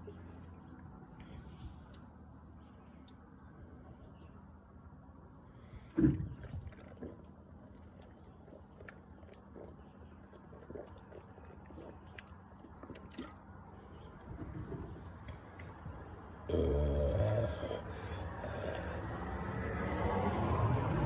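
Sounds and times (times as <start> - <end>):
person swallowing: 16.5 - 18.9.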